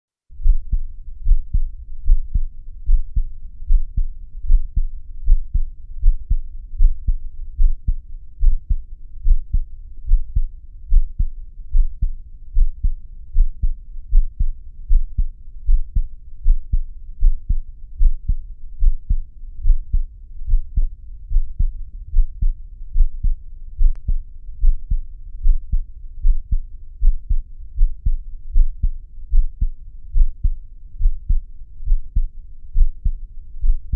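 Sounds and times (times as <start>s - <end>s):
heartbeat thumping: 0.4s - 33.9s.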